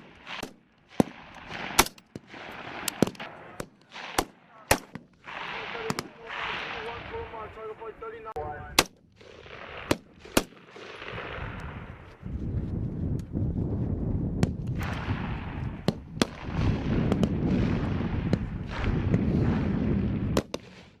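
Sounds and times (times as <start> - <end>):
rifle shots: 0.0 - 7.2, 8.8 - 11.6
low rumbling noise: 11.0 - 20.4.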